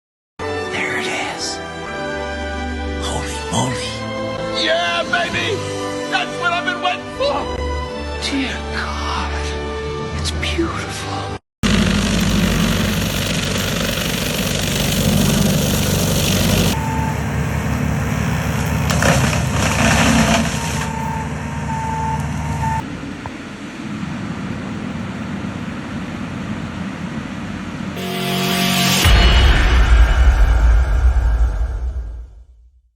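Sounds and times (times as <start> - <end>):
skid steer engine running hard: 11.6 - 22.8
backup alarm beeping: 15.8 - 18.4, 20.4 - 22.8.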